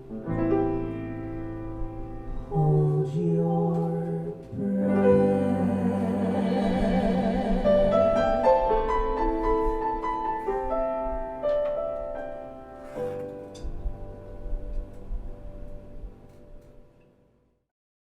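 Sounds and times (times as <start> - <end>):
solo piano notes: 0.0 - 17.3
held sung note with vibrato: 2.5 - 8.8.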